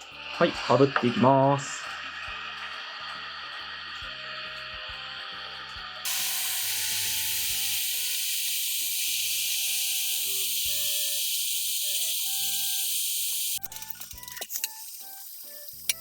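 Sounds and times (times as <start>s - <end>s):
soft background music: 0.0s - 16.0s
hot air gun hissing: 6.1s - 16.0s.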